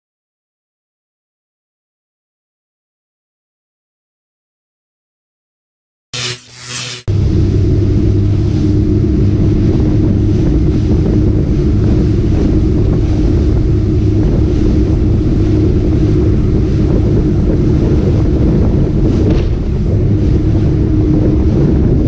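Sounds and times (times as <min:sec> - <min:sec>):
motorboat engine hum: 0:07.2 - 0:22.0
wind buffeting microphone: 0:08.7 - 0:22.0.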